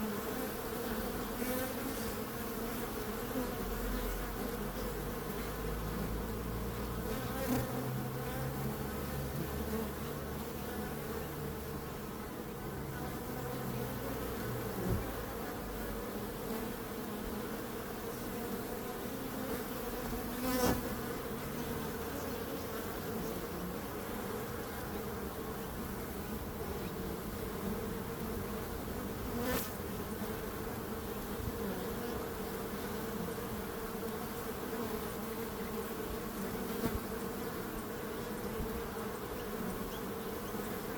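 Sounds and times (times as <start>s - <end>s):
bees buzzing: 0.0s - 40.9s.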